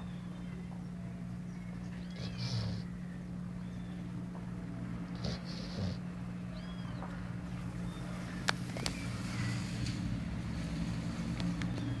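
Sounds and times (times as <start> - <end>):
pet purring rumble: 0.0 - 6.9.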